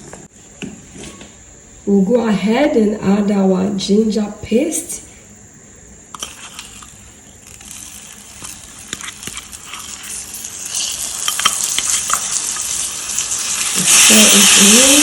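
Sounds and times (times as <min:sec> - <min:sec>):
ginger paste sizzling in caramel: 0:06.1 - 0:15.0.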